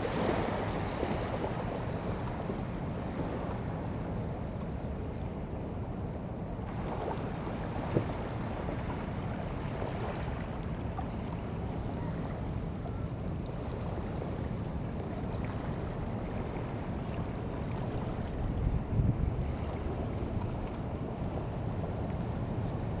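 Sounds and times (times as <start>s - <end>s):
wind on microphone: 15.3s - 23.0s.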